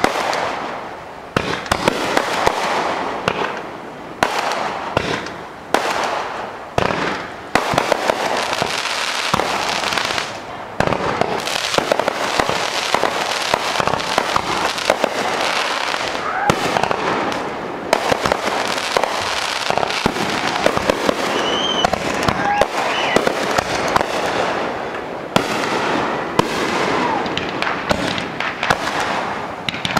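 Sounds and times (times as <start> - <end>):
fireworks bangs: 0.0 - 29.9
fireworks crackling: 0.0 - 29.9.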